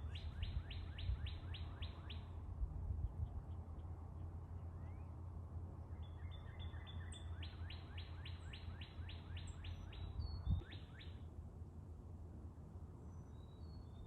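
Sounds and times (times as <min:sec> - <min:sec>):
songbird singing down-slurred notes: 0:00.0 - 0:02.4, 0:03.1 - 0:05.2, 0:05.9 - 0:11.3, 0:13.1 - 0:14.0.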